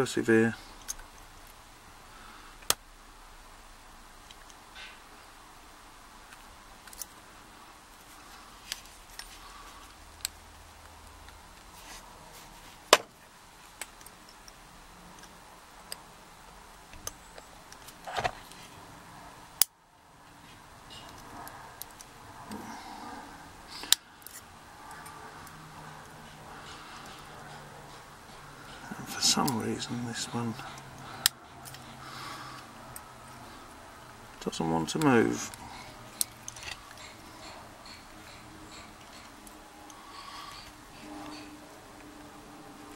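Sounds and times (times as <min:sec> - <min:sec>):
metal tool clicking on a padlock: 0:23.8 - 0:31.9, 0:34.8 - 0:40.0
faint metal scrape: 0:35.4 - 0:42.2.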